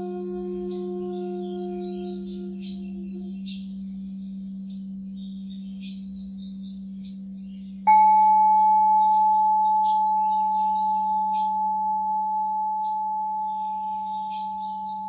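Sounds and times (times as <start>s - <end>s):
birds chirping: 0.0s - 15.0s
singing bowl ringing: 0.0s - 15.0s
steady low hum: 0.0s - 15.0s.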